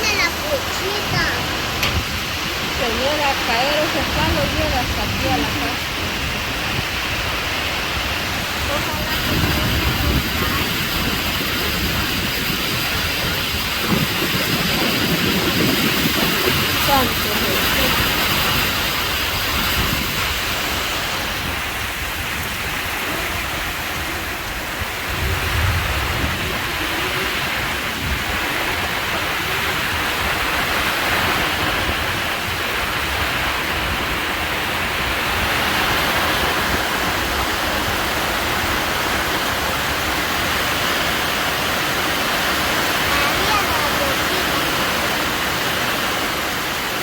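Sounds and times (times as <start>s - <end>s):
heavy rain and wind: 0.0s - 47.0s
low rumble: 0.4s - 29.0s.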